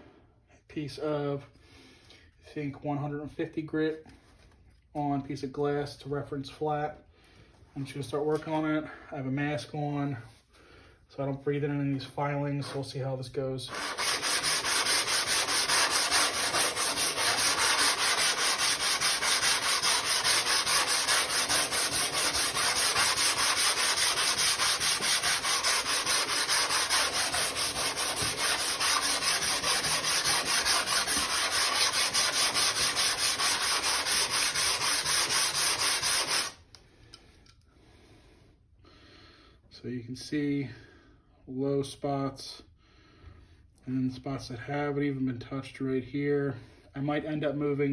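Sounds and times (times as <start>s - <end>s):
plane sole scraping on sandpaper: 12.6s - 12.9s, 13.7s - 36.6s.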